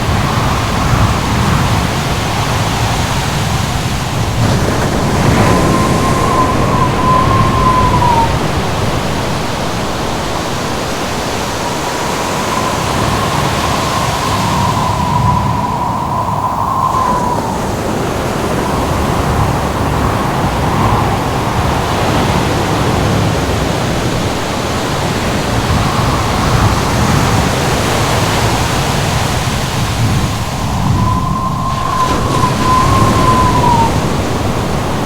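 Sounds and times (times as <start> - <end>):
ocean surf rushing: 0.0 - 35.0
wind howling: 0.0 - 35.0.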